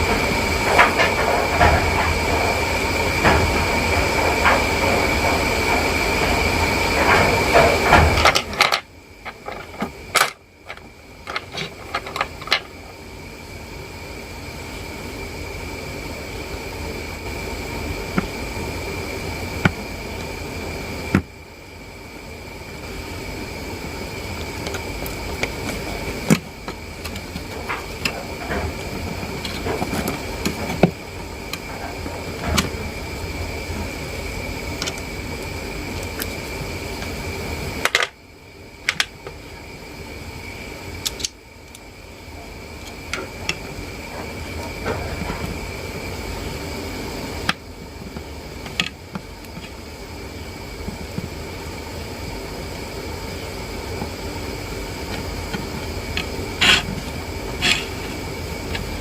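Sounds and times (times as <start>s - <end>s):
steady background hum: 0.0s - 59.0s.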